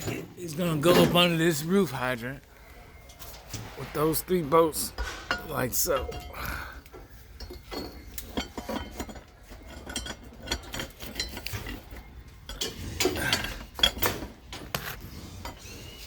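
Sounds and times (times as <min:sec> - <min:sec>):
metallic clinks and knocks: 0:04.9 - 0:14.8.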